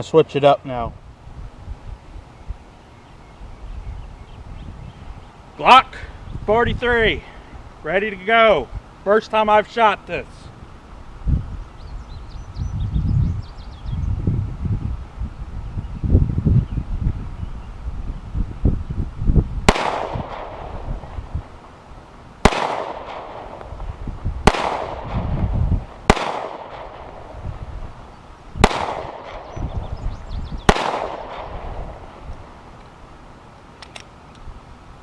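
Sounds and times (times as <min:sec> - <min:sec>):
pistol shots with echo: 0:19.7 - 0:21.2, 0:22.4 - 0:23.8, 0:24.4 - 0:25.4, 0:26.1 - 0:27.4, 0:28.6 - 0:29.6, 0:30.7 - 0:32.2.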